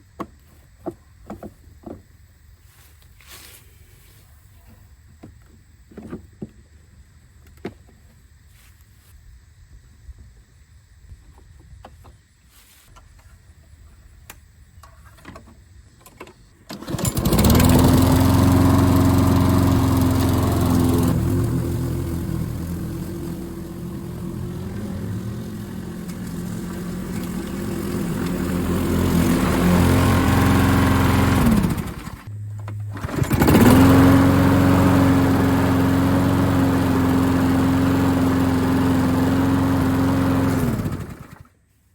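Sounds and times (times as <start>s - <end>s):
lawn mower engine: 16.6s - 41.6s.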